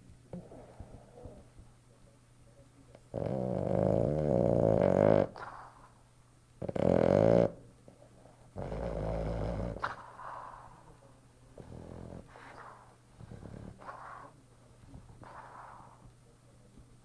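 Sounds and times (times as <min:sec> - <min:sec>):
dog snoring: 0:03.1 - 0:05.8, 0:06.6 - 0:07.7, 0:08.6 - 0:10.8, 0:11.6 - 0:16.1.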